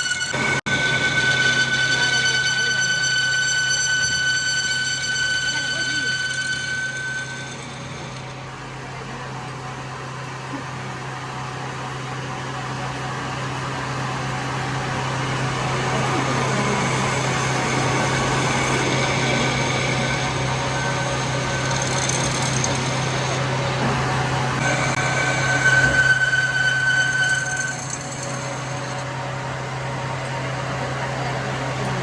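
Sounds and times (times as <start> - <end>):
road traffic noise: 14.6 - 26.5.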